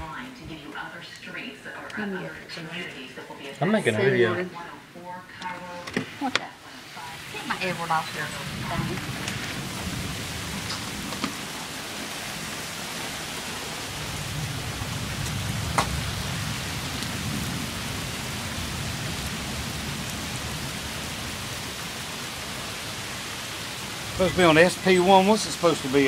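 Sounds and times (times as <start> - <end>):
steady rain: 0.0 - 26.0.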